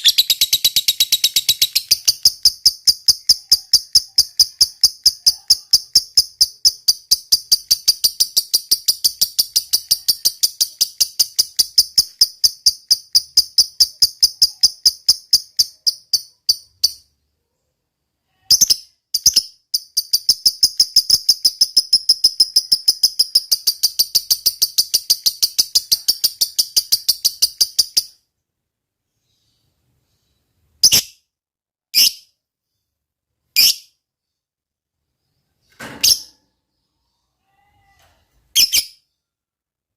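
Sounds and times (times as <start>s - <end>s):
lovebird chattering: 0.0s - 17.0s, 18.5s - 28.1s, 38.5s - 39.0s.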